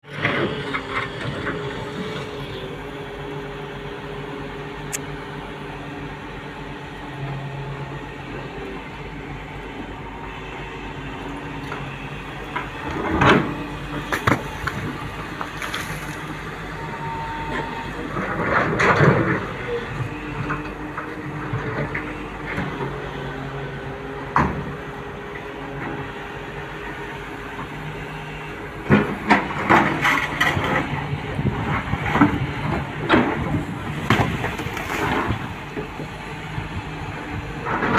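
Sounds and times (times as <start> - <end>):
excavator diesel engine: 0.0 - 37.9
excavator bucket scraping and clanking: 0.1 - 2.8, 11.4 - 23.1, 28.6 - 37.9.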